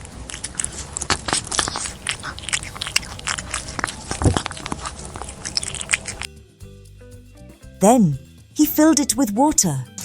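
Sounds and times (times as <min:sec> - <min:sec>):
cartoon crunchy chomping: 0:00.0 - 0:06.3.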